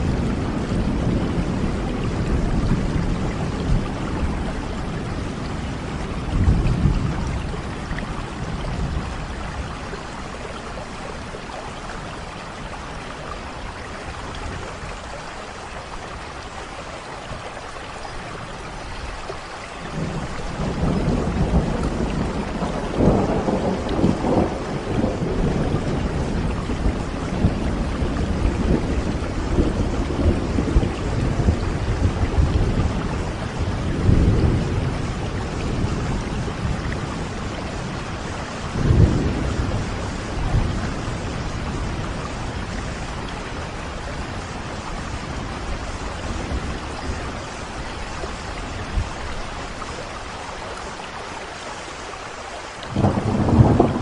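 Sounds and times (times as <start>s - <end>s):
thunder rumbling: 0.0s - 15.0s, 19.9s - 50.4s, 52.8s - 54.0s
steady rain: 0.0s - 54.0s.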